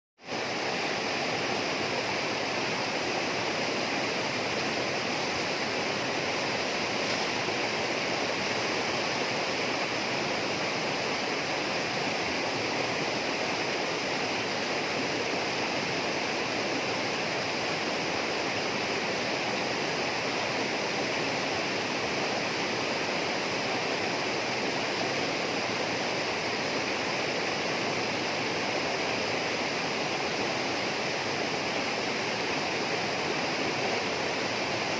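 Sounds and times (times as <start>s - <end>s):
rush of flowing water: 0.2s - 34.9s.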